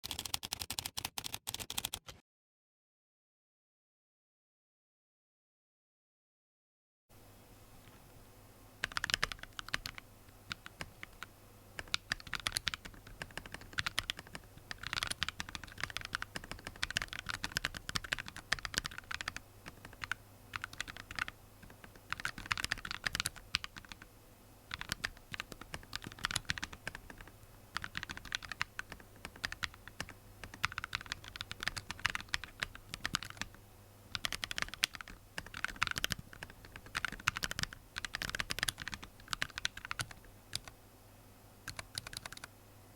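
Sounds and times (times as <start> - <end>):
typing on mechanical keyboard: 0.0 - 2.2, 8.8 - 24.1, 24.7 - 40.7, 41.7 - 42.5.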